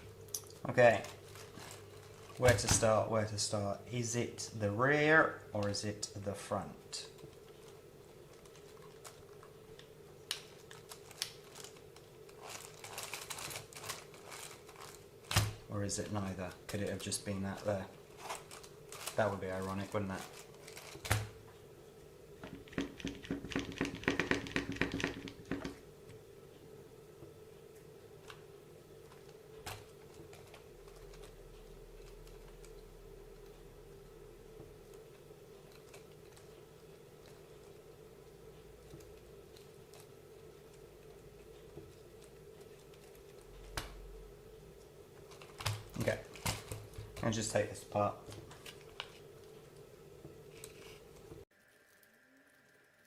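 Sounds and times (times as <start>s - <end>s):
rustling: 0.0s - 3.1s, 7.1s - 21.5s, 45.2s - 52.0s
faint steady hum: 0.0s - 53.0s.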